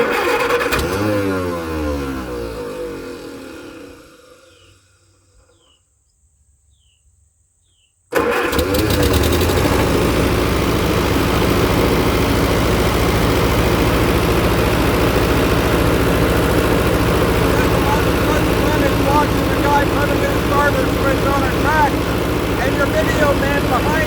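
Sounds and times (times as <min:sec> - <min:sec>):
tractor engine winding down: 0:00.0 - 0:05.7, 0:08.1 - 0:24.0
tractor engine idling: 0:08.1 - 0:24.0.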